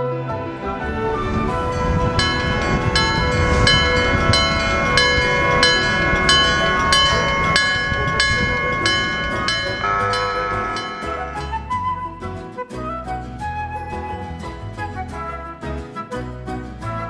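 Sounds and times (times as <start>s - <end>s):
low rumble: 0.6s - 12.3s
level crossing warning bell: 0.9s - 11.8s.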